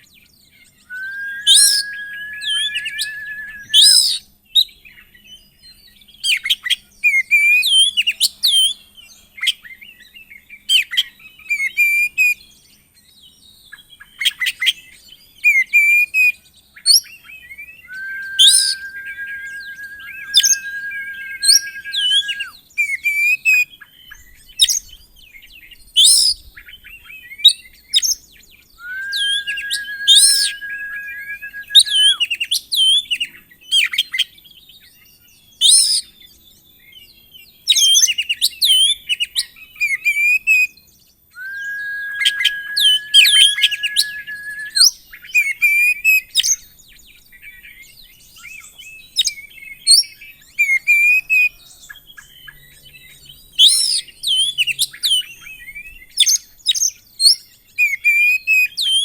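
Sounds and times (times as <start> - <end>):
long steady bird whistles: 0.0 - 59.0
songbird chirps and trills: 17.9 - 22.4.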